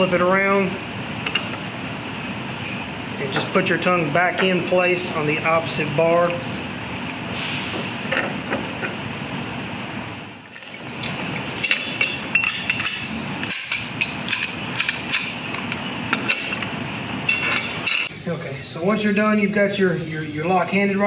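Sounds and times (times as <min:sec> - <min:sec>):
steady background hiss: 0:00.0 - 0:21.0.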